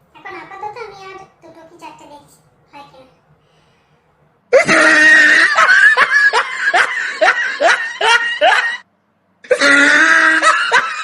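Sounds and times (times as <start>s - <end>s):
woman laughing: 4.6s - 8.8s.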